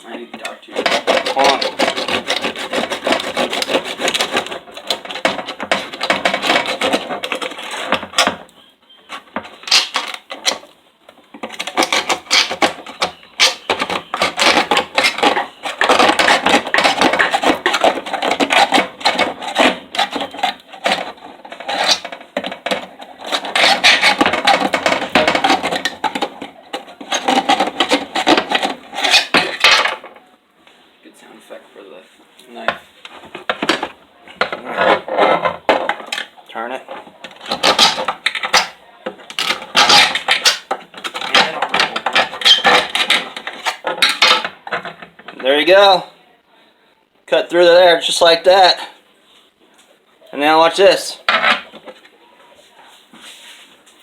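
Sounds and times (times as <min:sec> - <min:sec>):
knife sawing through tin lid: 0:00.7 - 0:08.0, 0:11.5 - 0:29.6.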